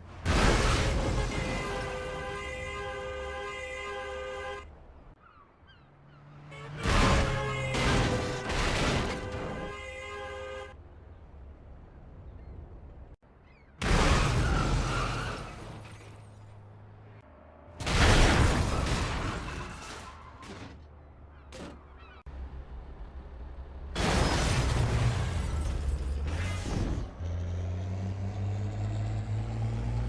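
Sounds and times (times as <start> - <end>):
car crash impact: 6.8 - 9.7, 13.8 - 16.4, 17.8 - 20.8, 24.0 - 27.1
debris falling: 17.8 - 20.8.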